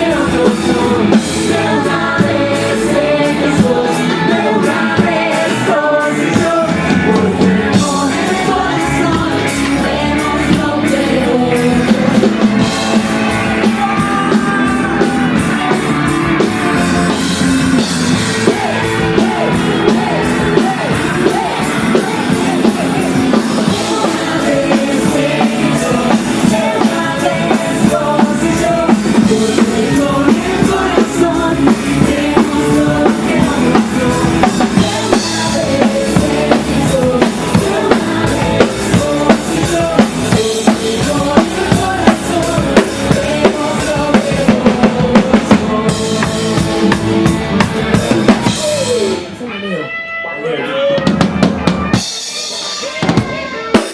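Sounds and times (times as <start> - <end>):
person singing: 0.0 - 49.8
live pop-rock band: 0.0 - 53.9
drum beat: 11.7 - 49.2.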